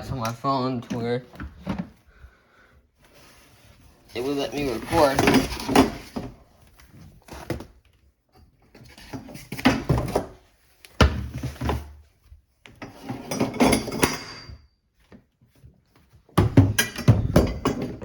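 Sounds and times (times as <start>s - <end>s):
cardboard rustling and scraping: 3.0s - 8.0s.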